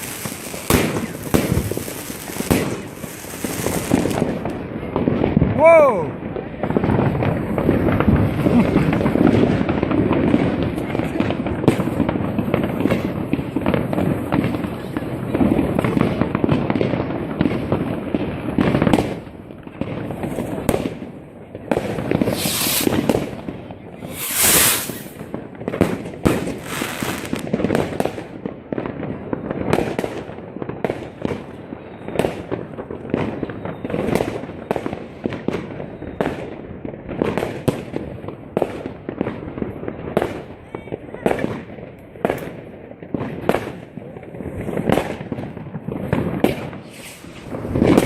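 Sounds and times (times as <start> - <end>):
hissing firework bursts: 0.0 - 4.6, 21.8 - 28.0, 44.5 - 48.0
fireworks bangs and crackles: 0.0 - 48.0.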